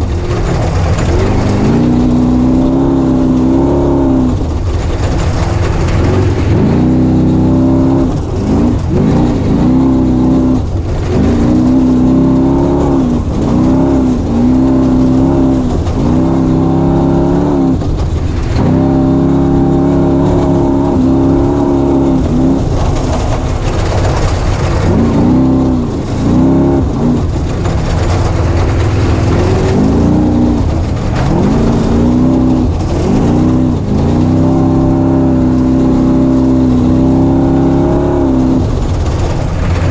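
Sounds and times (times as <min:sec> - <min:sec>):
low drivetrain rumble: 0:00.0 - 0:39.9
race vehicle engine revving: 0:00.0 - 0:39.9.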